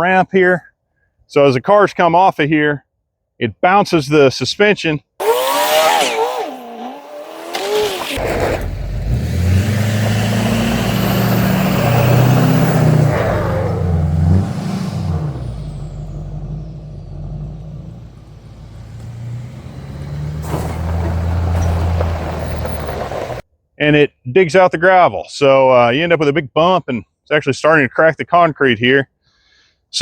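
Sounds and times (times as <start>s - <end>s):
car engine running: 5.2s - 23.4s
tyres on gravel: 5.2s - 23.4s.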